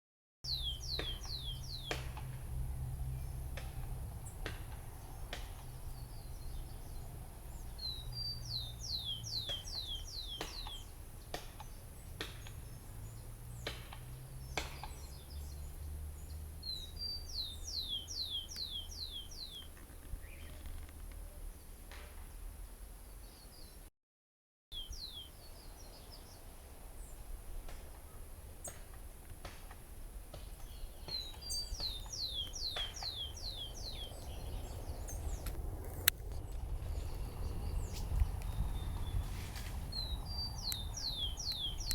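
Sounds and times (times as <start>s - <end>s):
songbird whistling: 0.5s - 2.0s, 7.8s - 10.9s, 16.6s - 20.6s, 24.8s - 26.1s, 30.7s - 35.4s, 39.9s - 41.9s.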